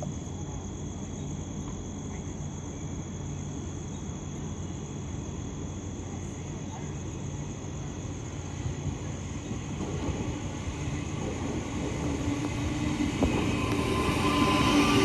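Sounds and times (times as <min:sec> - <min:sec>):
electric train rumbling: 0:04.4 - 0:15.0
train motor whine: 0:08.7 - 0:15.0.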